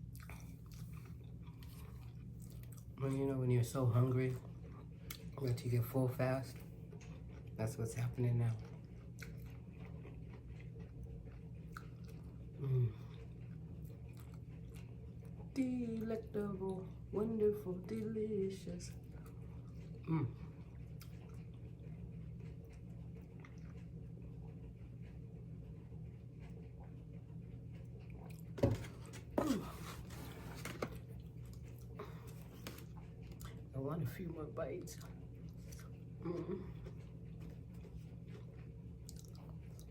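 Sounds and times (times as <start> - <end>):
close-up chewing: 0.0 - 3.1, 4.4 - 5.8, 6.5 - 15.6, 18.5 - 39.9
steady low hum: 0.0 - 39.9
person humming mm: 12.6 - 13.1, 20.1 - 20.4, 36.2 - 36.8.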